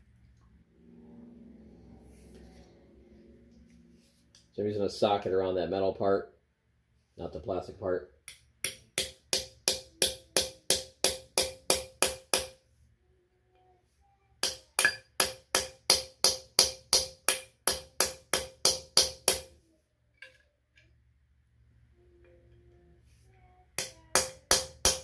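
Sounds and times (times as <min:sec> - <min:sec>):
hammer tapping on metal: 0:08.3 - 0:12.6, 0:14.4 - 0:19.5, 0:23.8 - 0:25.0.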